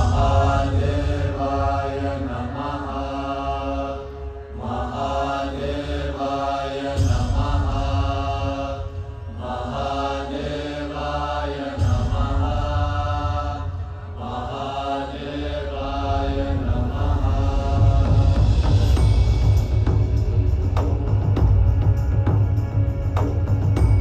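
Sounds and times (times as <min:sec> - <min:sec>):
mantra chanting: 0:00.0 - 0:18.8
heavy deep bass: 0:15.8 - 0:24.0.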